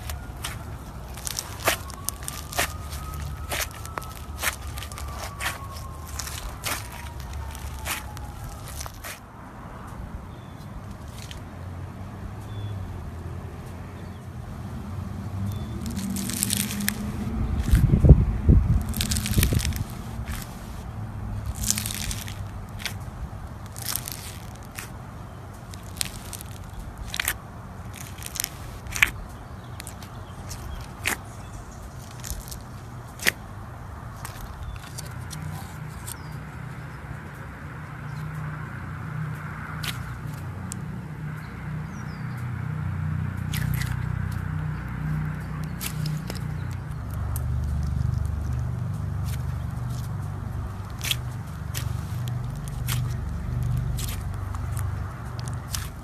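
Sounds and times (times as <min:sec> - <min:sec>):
slime crackling when squeezed: 0:00.0 - 0:09.2, 0:10.9 - 0:11.4, 0:15.5 - 0:33.5, 0:34.1 - 0:36.2, 0:39.8 - 0:40.4, 0:43.4 - 0:44.4, 0:45.6 - 0:56.0
steady low hum: 0:00.0 - 0:36.2.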